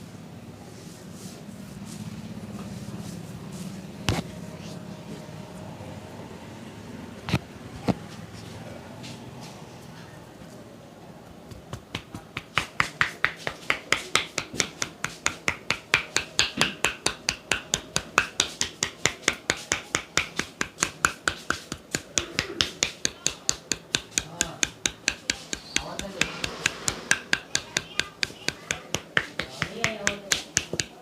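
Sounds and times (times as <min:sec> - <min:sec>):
hands slapping in massage strokes: 0:11.4 - 0:31.0.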